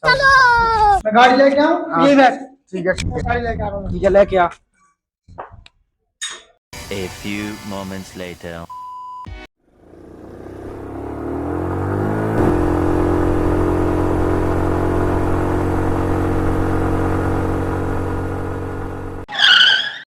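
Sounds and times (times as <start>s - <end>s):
vehicle engine revving: 9.7s - 19.3s.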